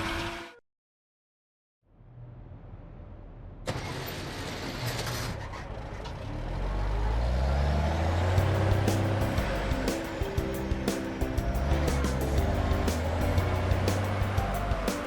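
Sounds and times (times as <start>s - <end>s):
musical notes: 8.4s - 15.0s.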